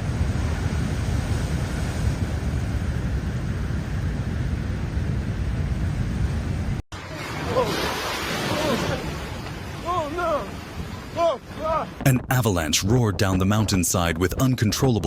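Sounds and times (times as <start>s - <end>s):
wind on microphone: 0.0s - 6.8s
surf: 5.0s - 15.0s.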